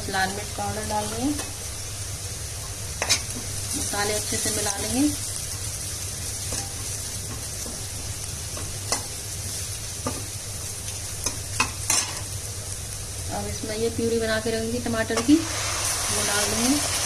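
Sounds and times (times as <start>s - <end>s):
food sizzling in hot oil: 0.0s - 17.0s
spoon scraping a pan: 3.0s - 3.9s.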